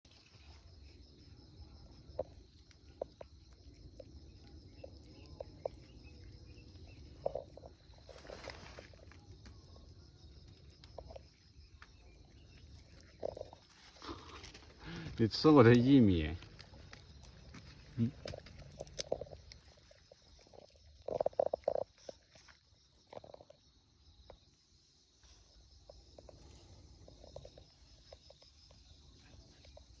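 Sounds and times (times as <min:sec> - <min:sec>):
puppy chewing seedlings: 0:00.1 - 0:23.6
crickets chirring: 0:00.1 - 0:30.0
puppy chewing with crunches: 0:10.8 - 0:15.0, 0:16.4 - 0:23.5.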